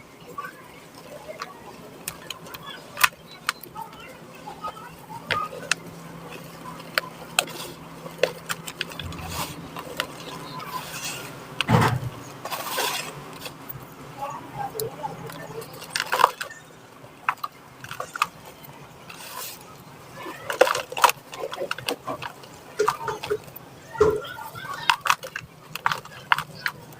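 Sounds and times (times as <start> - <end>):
cement chunks crumbling and cracking: 20.2 - 26.9.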